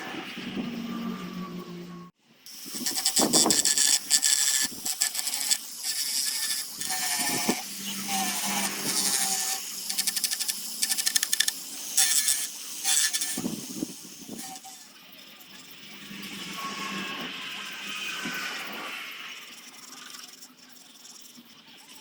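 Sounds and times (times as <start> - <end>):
power tool scratching wood: 2.5 - 14.9.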